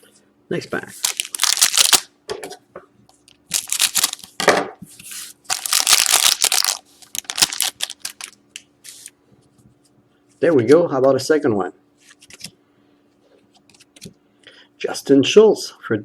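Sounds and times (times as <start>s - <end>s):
card pack wrapper tearing and crinkling: 1.0s - 2.1s, 3.4s - 4.4s, 5.5s - 8.4s.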